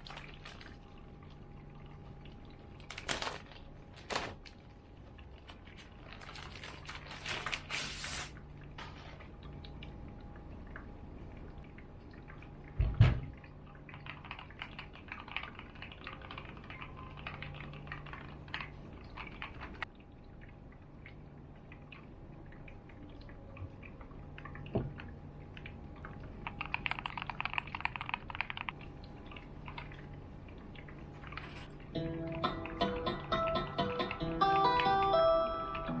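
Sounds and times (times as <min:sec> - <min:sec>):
heavier keyboard thump: 0:04.0 - 0:04.4.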